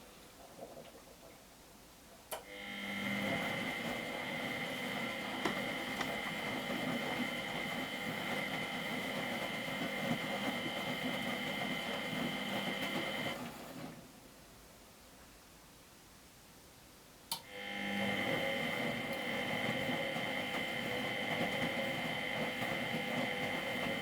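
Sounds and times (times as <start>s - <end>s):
washing machine drum whine: 2.4s - 13.7s, 17.4s - 24.0s.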